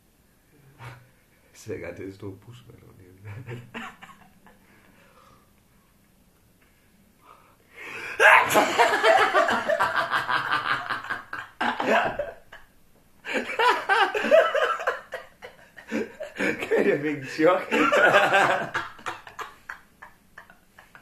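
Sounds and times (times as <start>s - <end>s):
hearty laughter: 8.2s - 12.6s, 13.2s - 17.0s, 17.6s - 21.0s.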